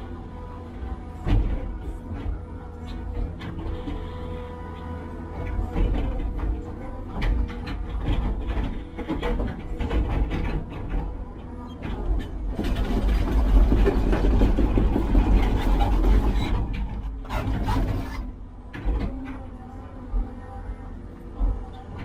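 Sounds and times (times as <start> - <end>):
heavy machine engine running: 0.0 - 22.0
knocks and clanks: 4.8 - 18.1.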